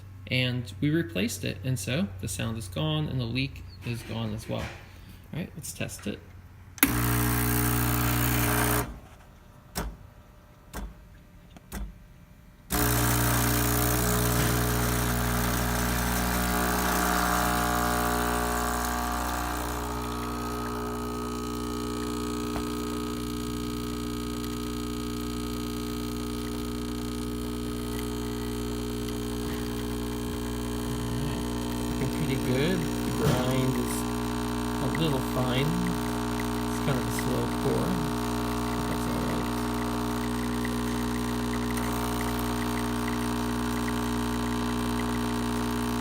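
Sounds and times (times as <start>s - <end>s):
espresso machine pump humming: 6.8s - 9.0s, 12.7s - 46.0s.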